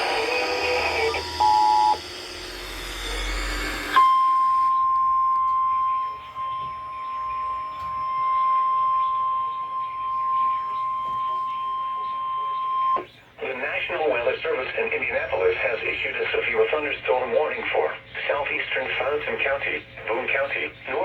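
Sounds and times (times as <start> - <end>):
two-tone beep: 0.0 - 2.0, 3.9 - 13.0
radio hiss: 0.0 - 4.0, 11.2 - 21.0
steady alarm tone: 0.0 - 13.1.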